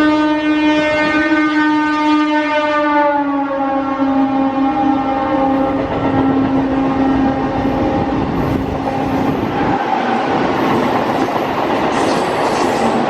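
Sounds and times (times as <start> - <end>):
train horn: 0.0 - 8.6
train running along track: 0.0 - 13.0.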